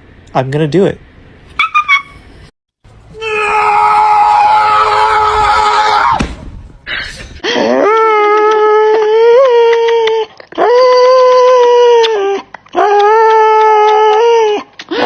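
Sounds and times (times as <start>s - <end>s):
person screaming: 3.1s - 6.2s
dog howling: 7.7s - 14.7s.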